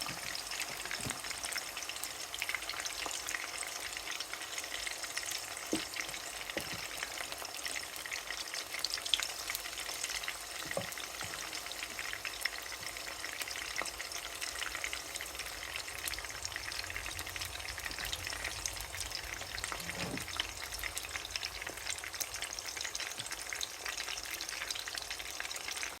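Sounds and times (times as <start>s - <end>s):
chicken sizzling in hot oil: 0.0s - 26.0s
stirring scrapes and knocks: 19.3s - 20.7s.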